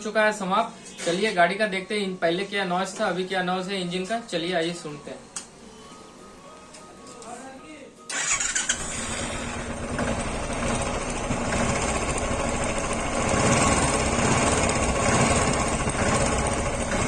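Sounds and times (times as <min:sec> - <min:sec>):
motorcycle engine idling: 0:08.1 - 0:17.0.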